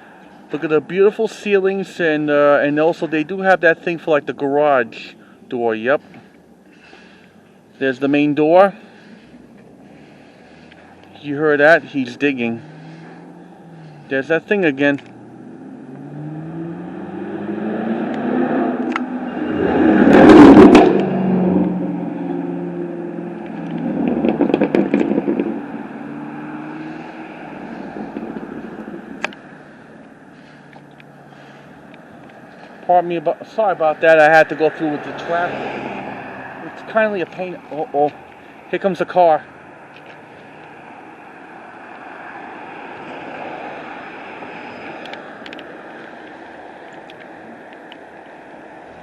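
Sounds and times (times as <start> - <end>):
vehicle engine running: 8.5 - 41.4
car driving past: 8.8 - 49.0.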